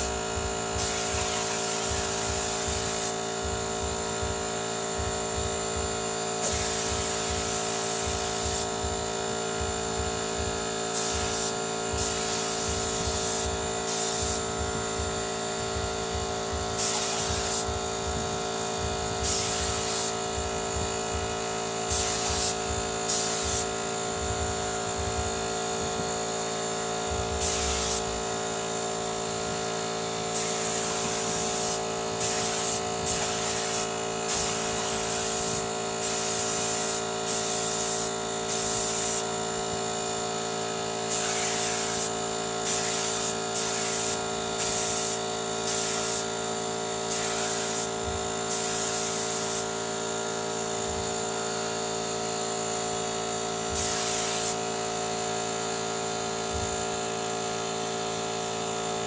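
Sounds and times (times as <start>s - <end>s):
compressed air hissing bursts: 0.0s - 3.7s, 6.4s - 9.0s, 10.9s - 14.8s, 16.6s - 24.0s, 27.1s - 39.8s, 41.0s - 49.9s, 53.7s - 54.9s
air compressor humming: 0.0s - 59.0s.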